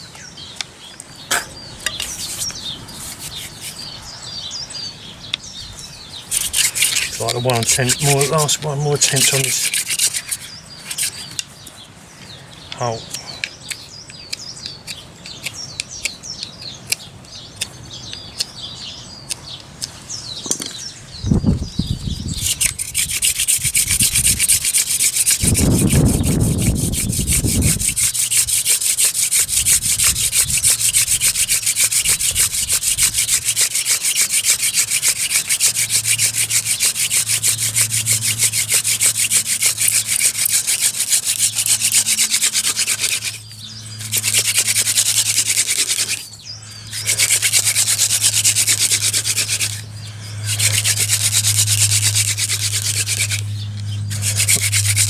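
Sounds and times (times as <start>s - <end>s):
birds chirping: 0.0s - 55.0s
wood rasping on wood: 1.3s - 4.0s, 6.2s - 11.5s, 22.0s - 55.0s.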